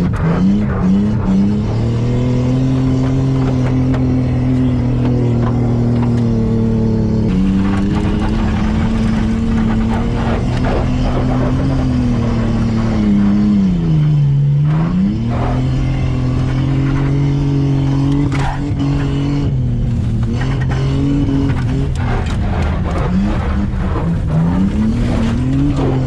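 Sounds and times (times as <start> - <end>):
car engine revving: 0.0 - 26.0
car tires skidding: 7.2 - 26.0.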